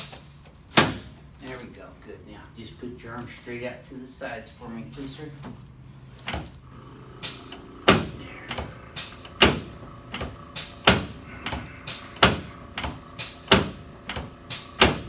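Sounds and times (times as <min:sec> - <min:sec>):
sharp clacks of chiropractic adjustment: 0:07.2 - 0:15.0.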